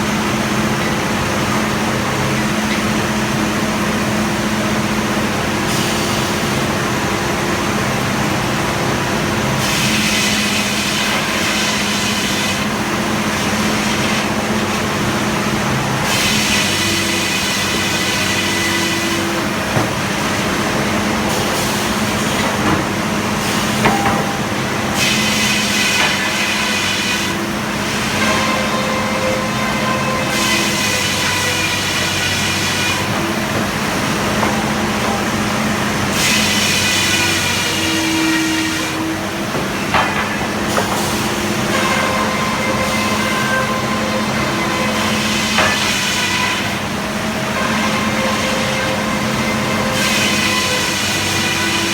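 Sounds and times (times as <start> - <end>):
sawmill droning: 0.0 - 51.9.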